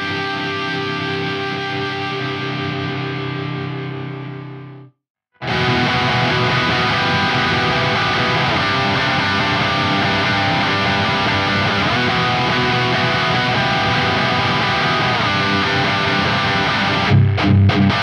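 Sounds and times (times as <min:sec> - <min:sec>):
electric guitar playing: 0:00.0 - 0:18.0.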